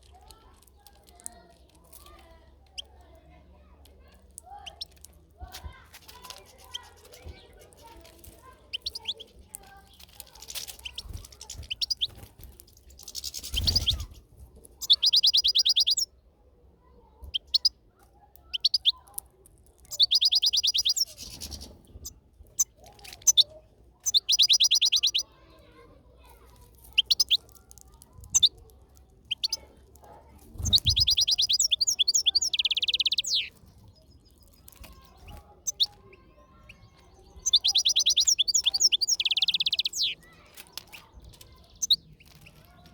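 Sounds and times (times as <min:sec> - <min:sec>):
bird singing twittering trills: 0:04.4 - 0:05.1, 0:06.3 - 0:16.2, 0:17.3 - 0:17.8, 0:18.5 - 0:19.0, 0:19.9 - 0:25.4, 0:26.9 - 0:27.5, 0:28.2 - 0:28.6, 0:29.2 - 0:29.7, 0:30.6 - 0:42.8.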